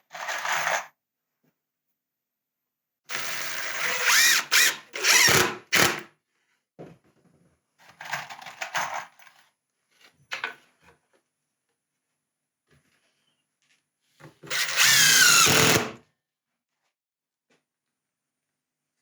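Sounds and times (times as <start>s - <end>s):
cordless drill whining into wood: 3.1s - 6.0s, 14.5s - 16.0s.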